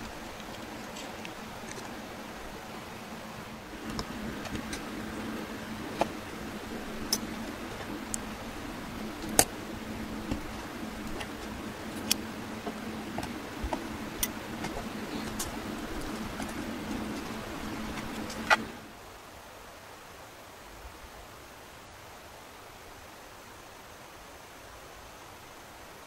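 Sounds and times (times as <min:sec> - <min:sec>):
steady low hum: 0:00.0 - 0:19.3.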